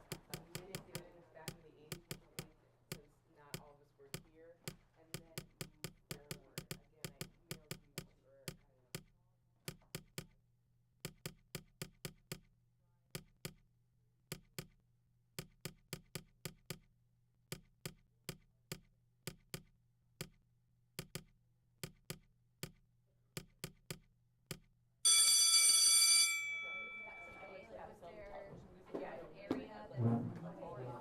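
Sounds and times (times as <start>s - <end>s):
pen tapping on a desk: 0.0s - 9.1s, 9.7s - 10.4s, 11.0s - 12.5s, 14.3s - 14.8s, 15.4s - 16.9s, 17.5s - 20.4s, 21.0s - 22.8s, 23.4s - 24.7s
loud ringing tone: 25.1s - 27.4s.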